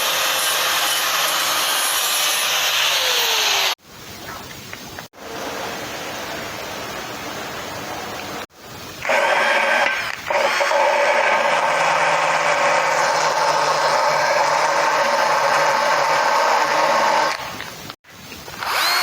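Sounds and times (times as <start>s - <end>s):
buzzing power tool: 9.0s - 17.4s, 18.6s - 19.0s.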